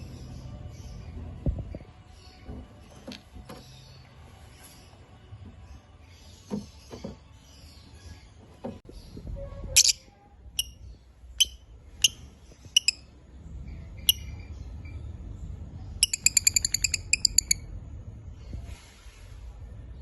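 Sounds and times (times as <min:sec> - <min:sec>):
lovebirds chirping: 0:10.6 - 0:15.2, 0:16.0 - 0:17.7.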